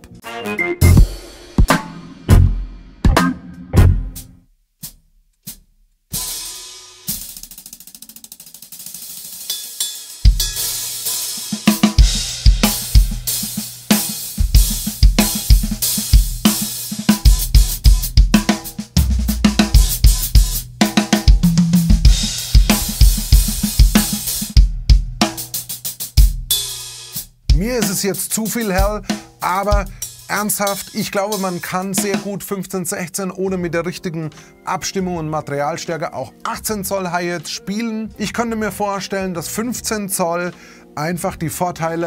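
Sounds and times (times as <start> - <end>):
drum kit groove: 0.8 - 32.8
open hi-hat washing: 4.8 - 32.3.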